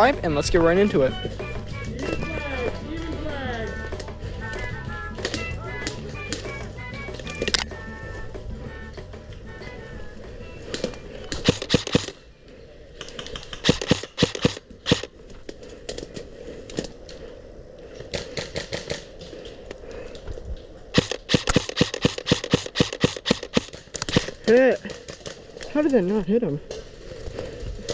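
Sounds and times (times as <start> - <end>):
airsoft rifle firing bursts: 11.4 - 12.2, 13.6 - 15.1, 21.0 - 24.3.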